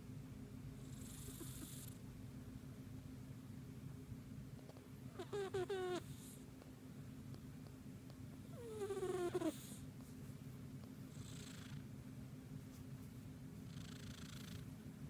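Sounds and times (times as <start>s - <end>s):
cat snoring: 0.8s - 2.0s, 5.1s - 6.4s, 8.5s - 9.9s, 11.1s - 11.8s, 13.7s - 14.7s.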